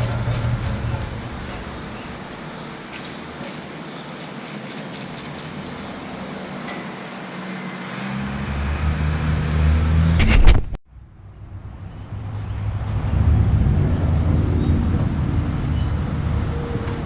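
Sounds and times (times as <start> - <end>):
vehicle engine rumble: 0.0 - 17.0
sharp clicks: 10.2 - 10.8.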